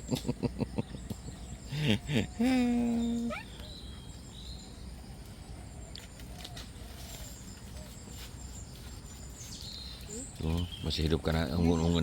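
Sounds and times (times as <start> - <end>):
faint insect whine: 0.0 - 12.0.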